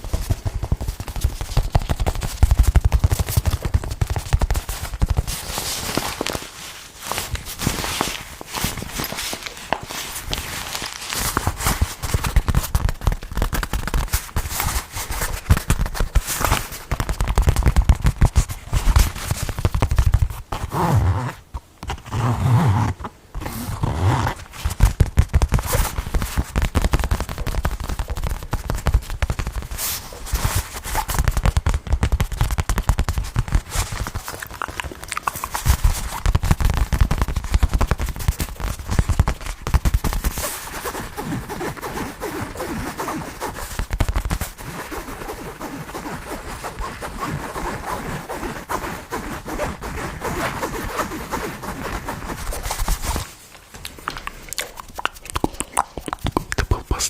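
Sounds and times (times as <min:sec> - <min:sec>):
fast tapping close to microphone: 0:00.0 - 0:05.5, 0:11.2 - 0:20.6, 0:24.6 - 0:48.3, 0:53.9 - 0:57.0.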